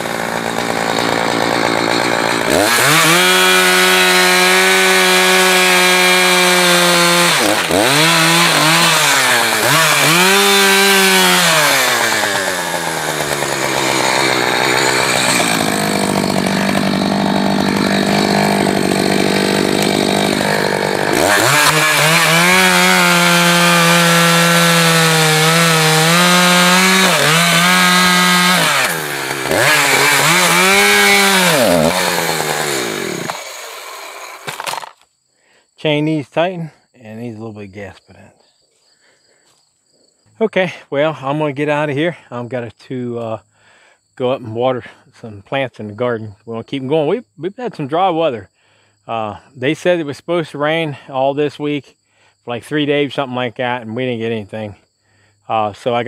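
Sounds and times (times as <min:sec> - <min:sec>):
chainsaw cutting wood: 0:00.0 - 0:35.1.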